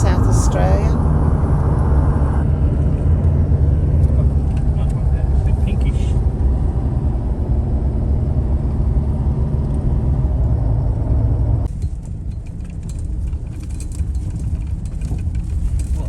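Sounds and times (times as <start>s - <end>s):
car driving rumble: 0.0s - 11.7s.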